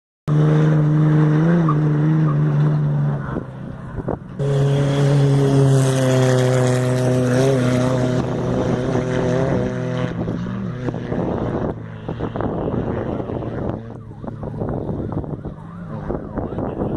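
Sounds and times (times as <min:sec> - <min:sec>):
vehicle engine running: 0:02.5 - 0:16.9.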